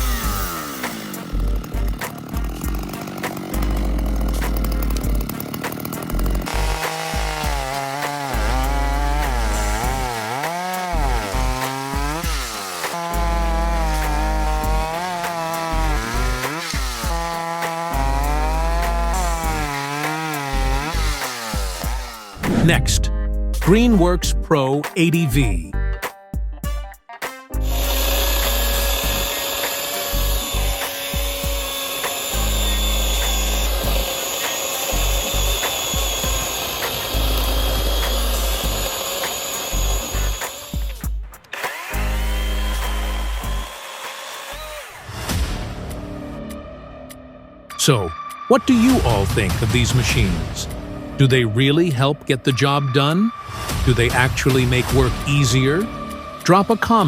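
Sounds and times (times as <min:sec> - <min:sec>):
chainsaw bogging under load: 0:00.0 - 0:23.0, 0:27.6 - 0:41.0.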